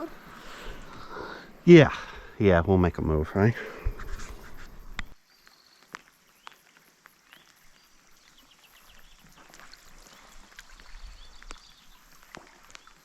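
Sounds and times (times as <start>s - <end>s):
paddle splashing water: 8.0s - 13.0s
small birds chirping: 10.7s - 13.0s.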